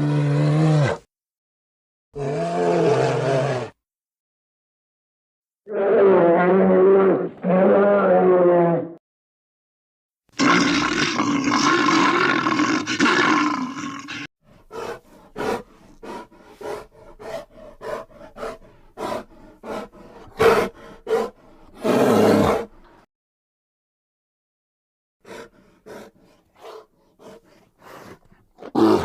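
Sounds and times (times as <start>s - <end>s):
bear roaring: 0.0s - 1.0s, 2.2s - 3.8s, 5.7s - 9.0s, 10.4s - 23.0s, 25.3s - 29.0s.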